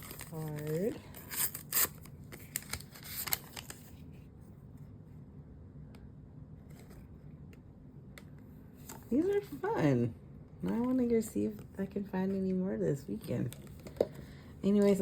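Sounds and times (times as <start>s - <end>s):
paper packaging rustling: 0.0s - 4.1s
low room hum: 0.0s - 15.0s.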